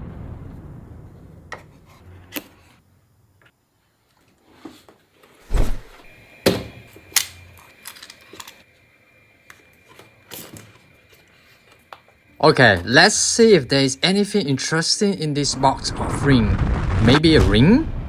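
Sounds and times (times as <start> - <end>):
dull thump: 5.5 - 6.1.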